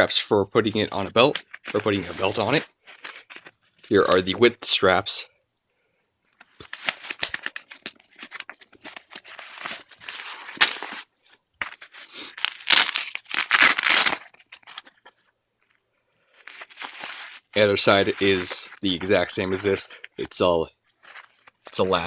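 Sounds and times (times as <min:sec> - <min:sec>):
fabric and straps rustling: 0:06.4 - 0:19.8
rasping tearing noises: 0:12.2 - 0:14.6.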